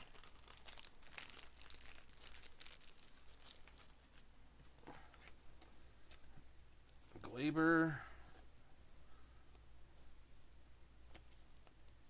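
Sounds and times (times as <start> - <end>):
plastic sleeves crinkling: 0.0 - 7.3.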